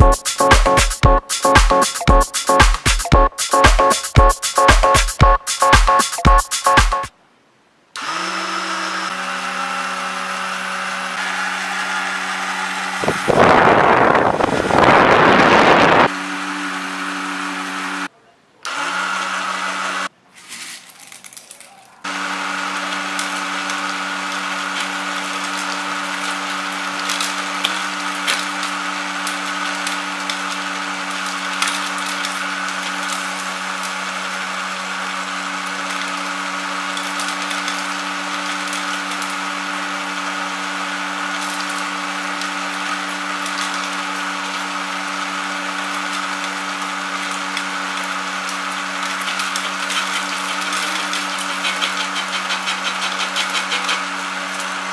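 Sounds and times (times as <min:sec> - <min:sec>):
seed-cracking machine humming: 0:00.0 - 0:07.1, 0:08.0 - 0:18.1, 0:21.1 - 0:54.9
seed shells crackling: 0:20.4 - 0:22.0, 0:41.4 - 0:54.8.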